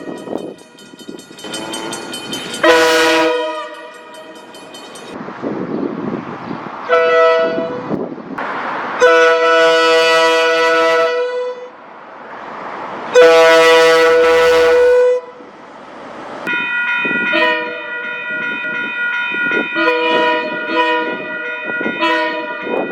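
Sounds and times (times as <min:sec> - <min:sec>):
train horn blasts: 0:00.0 - 0:00.8, 0:01.4 - 0:04.6, 0:06.9 - 0:08.0, 0:09.0 - 0:11.8, 0:13.1 - 0:15.5, 0:17.2 - 0:18.0, 0:19.7 - 0:22.9
different-pitched horn: 0:01.5 - 0:04.5, 0:06.9 - 0:07.9, 0:09.0 - 0:11.7, 0:13.2 - 0:15.4, 0:19.8 - 0:22.8.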